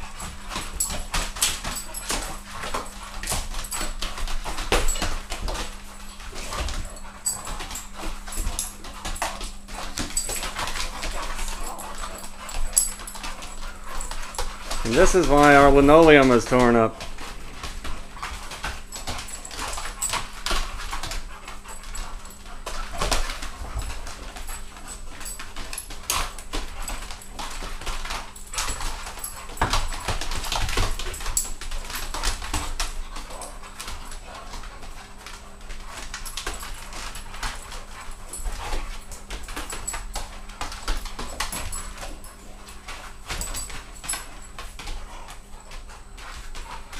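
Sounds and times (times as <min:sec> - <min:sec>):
dog claws scrabbling on linoleum: 0:00.0 - 0:46.9
dog vocal sounds: 0:06.4 - 0:17.0.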